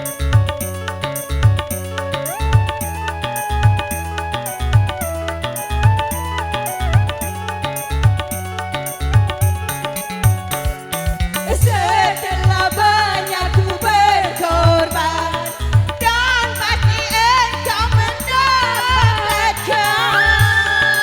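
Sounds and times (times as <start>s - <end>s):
band playing wavering lead melody: 0.0s - 12.3s
steady drum beat: 0.0s - 21.0s.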